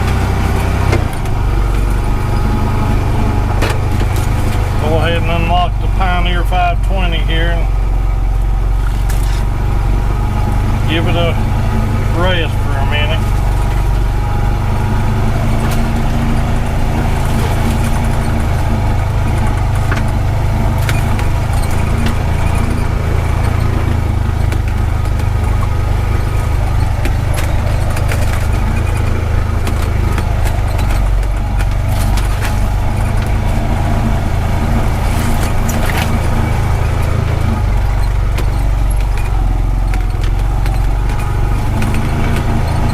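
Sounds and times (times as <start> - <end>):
vehicle engine droning: 0.0 - 42.9
clicks and rattles: 16.9 - 42.9.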